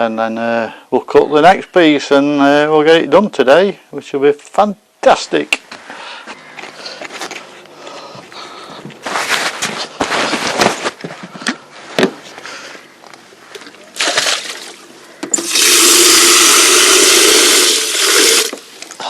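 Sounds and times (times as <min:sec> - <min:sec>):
water running into a kettle: 0:15.4 - 0:18.6.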